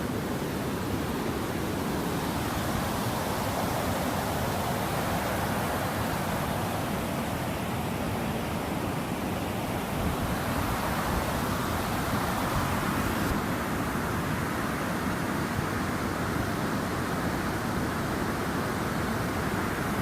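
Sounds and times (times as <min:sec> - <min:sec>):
waterfall roaring: 0:00.0 - 0:20.0.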